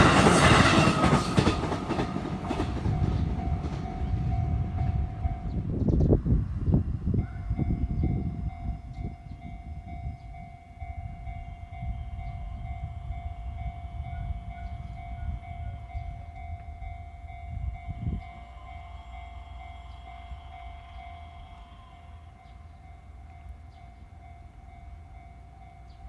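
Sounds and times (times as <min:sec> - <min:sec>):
train wheels rumbling and clattering: 0:00.0 - 0:06.3
level crossing alarm ringing: 0:07.6 - 0:26.0.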